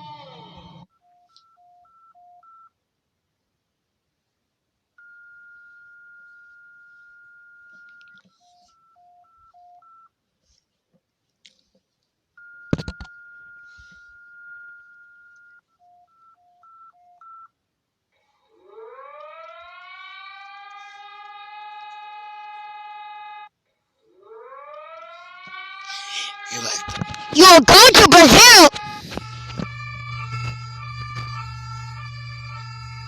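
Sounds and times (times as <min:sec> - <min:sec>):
civil defense siren wailing: 0:18.5 - 0:23.5, 0:24.1 - 0:28.1, 0:28.7 - 0:33.0.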